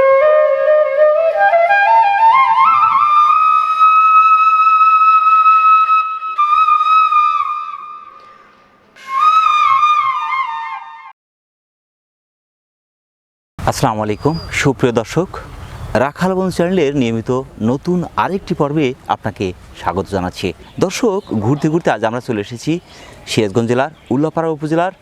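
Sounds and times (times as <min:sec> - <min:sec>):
wind instrument melody: 0:00.0 - 0:08.3, 0:09.0 - 0:11.1.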